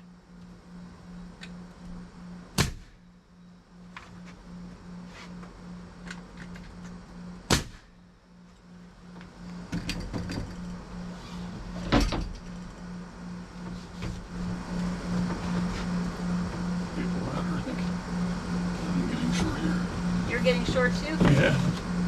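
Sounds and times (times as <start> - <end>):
low pulsing hum: 0.0 - 22.0
loud sharp nail strikes: 2.6 - 3.0, 7.5 - 7.9.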